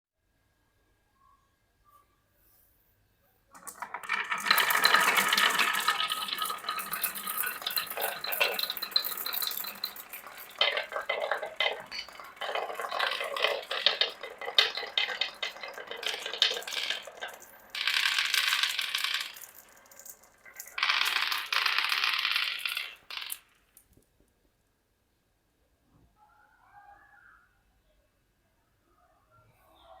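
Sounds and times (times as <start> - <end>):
marbles clattering down wooden run: 3.6 - 23.8.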